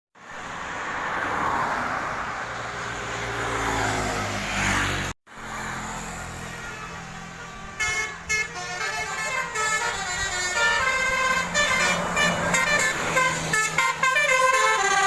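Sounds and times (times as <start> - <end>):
road noise: 0.1 - 15.0
multi-tone bus horn: 7.4 - 15.0.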